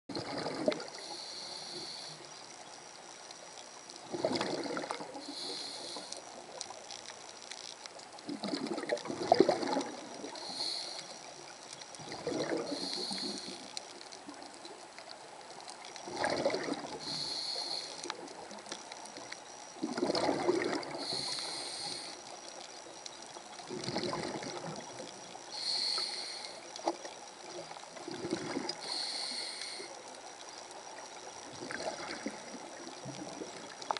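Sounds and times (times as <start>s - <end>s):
bubbling exhaled air: 0.1s - 2.1s, 4.1s - 6.2s, 8.3s - 11.1s, 12.0s - 13.7s, 16.0s - 18.3s, 19.8s - 22.2s, 23.7s - 24.8s, 28.0s - 29.9s, 31.5s - 33.7s
regulator hissing inhale: 0.9s - 2.4s, 5.2s - 6.3s, 10.3s - 11.3s, 12.6s - 13.8s, 16.9s - 18.1s, 20.9s - 22.3s, 25.5s - 26.8s, 28.8s - 30.1s.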